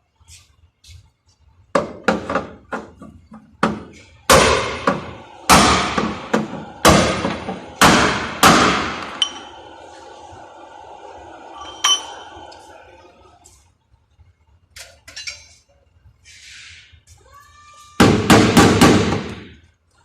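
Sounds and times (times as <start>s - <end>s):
hammer blows on sheet metal: 4.3s - 9.1s.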